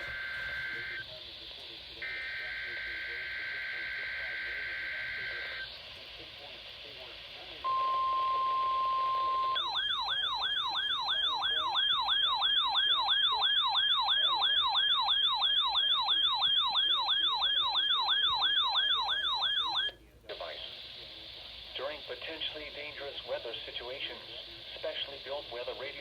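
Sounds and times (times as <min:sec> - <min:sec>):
electronic siren yelp: 0:00.0 - 0:01.0, 0:07.9 - 0:19.9.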